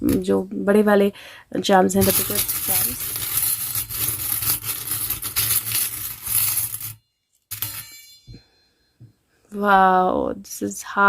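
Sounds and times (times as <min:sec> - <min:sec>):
metal charms jingling: 0:02.0 - 0:07.0
high metal clink: 0:05.0 - 0:08.9.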